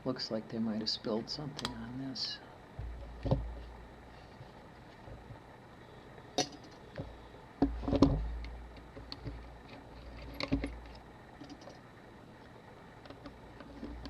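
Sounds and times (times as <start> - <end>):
small tools clicking and clinking: 6.4 - 6.8.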